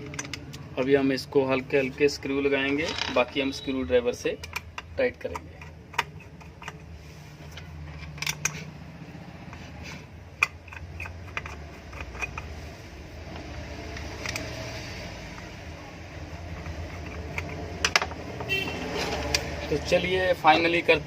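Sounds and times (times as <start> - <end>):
small metal clicks of screws: 0.0 - 0.6, 4.4 - 6.9, 7.5 - 8.7, 10.4 - 12.6, 13.4 - 14.6.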